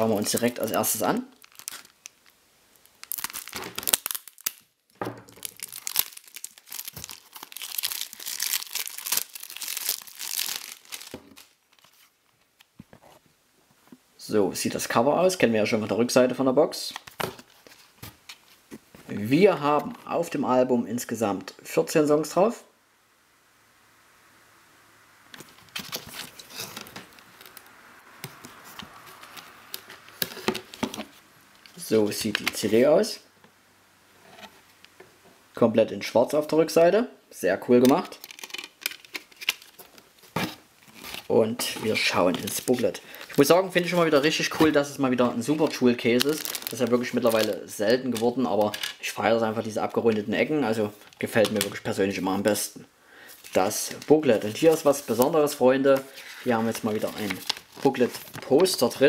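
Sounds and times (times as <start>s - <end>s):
plastic wrapping crinkling and tearing: 0.0s - 12.8s, 25.4s - 32.8s, 37.8s - 52.6s, 53.3s - 59.0s.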